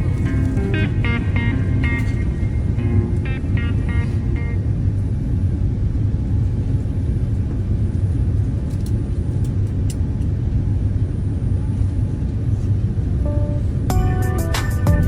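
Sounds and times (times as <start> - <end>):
vehicle rumbling in motion: 0.0 - 9.3.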